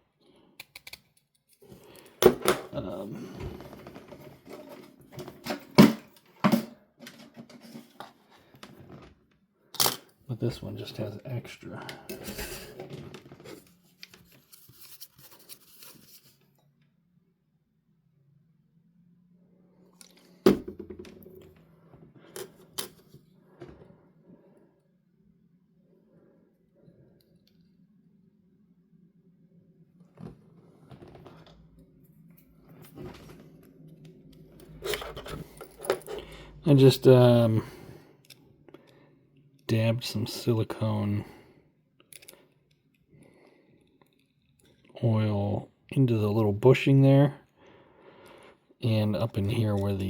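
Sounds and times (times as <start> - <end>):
clicks and taps of small tools: 0.6 - 1.6.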